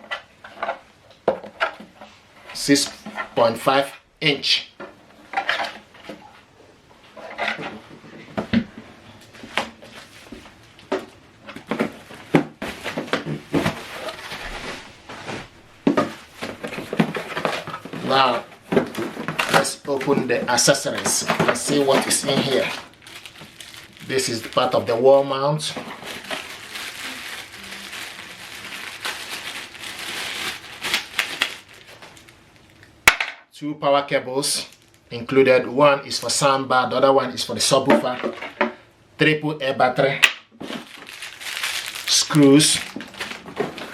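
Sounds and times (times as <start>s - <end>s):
plastic bags crinkling: 7.1s - 33.0s, 34.6s - 35.1s, 40.6s - 43.9s.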